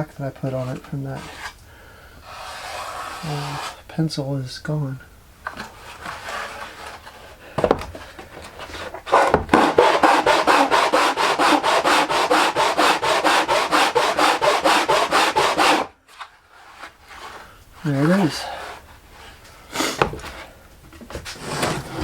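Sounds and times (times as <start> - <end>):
wood sanding on sandpaper: 0.4 - 1.6, 2.2 - 3.8, 9.1 - 15.9.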